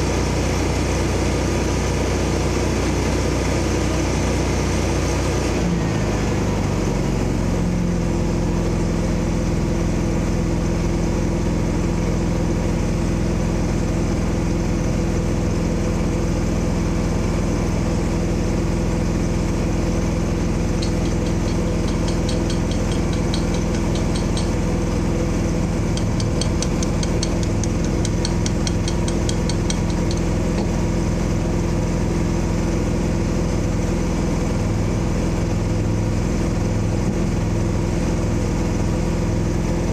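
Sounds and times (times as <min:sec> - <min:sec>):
engine running steadily: 0:00.0 - 0:39.9
fast high ticking: 0:20.8 - 0:25.1, 0:25.9 - 0:30.7.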